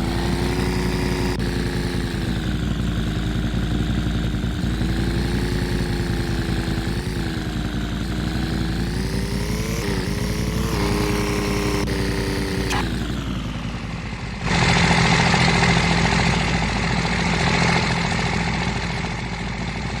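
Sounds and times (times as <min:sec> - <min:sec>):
vehicle engine running: 0:00.0 - 0:20.0
loud hissy engine noise: 0:08.0 - 0:17.1.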